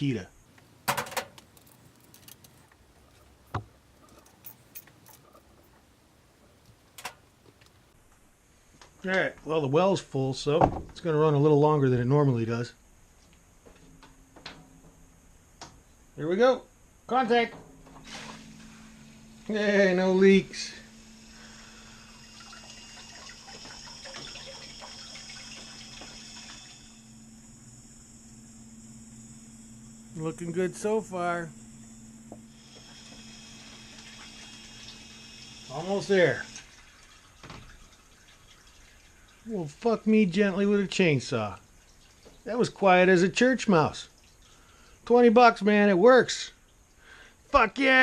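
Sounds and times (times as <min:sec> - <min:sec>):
sump pump motor hum: 0:17.2 - 0:43.0
water gurgling and splashing: 0:22.0 - 0:27.0.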